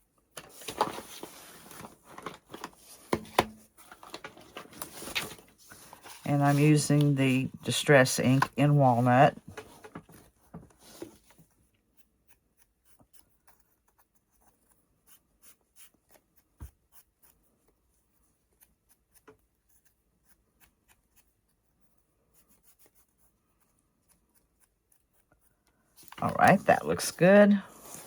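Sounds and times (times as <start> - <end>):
ink pad dabbing and rubbing: 6.1 - 9.3.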